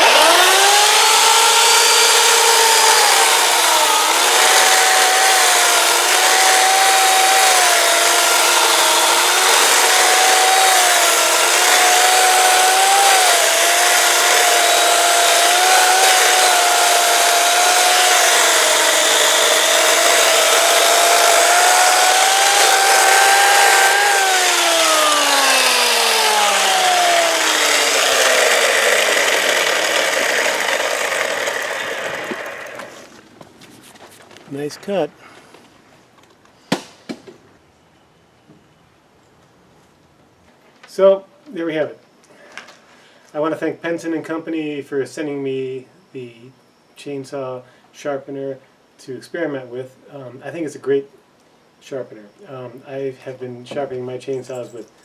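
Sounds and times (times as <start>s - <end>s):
chainsaw cutting wood: 0.0s - 33.2s.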